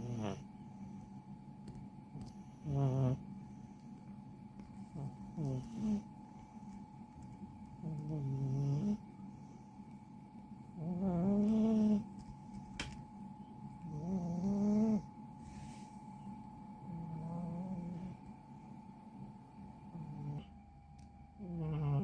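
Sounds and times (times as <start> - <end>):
cat snoring: 0.0 - 0.9, 2.2 - 3.8, 4.9 - 6.5, 7.8 - 9.7, 10.8 - 12.1, 13.8 - 15.1, 16.8 - 18.2, 19.8 - 20.5, 21.4 - 22.0.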